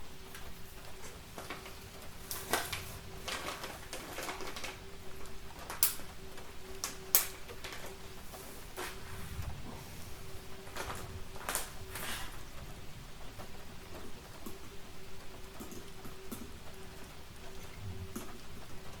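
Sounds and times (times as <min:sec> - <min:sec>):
faint steady hum: 0:00.0 - 0:19.0
wood fire crackling: 0:00.0 - 0:19.0.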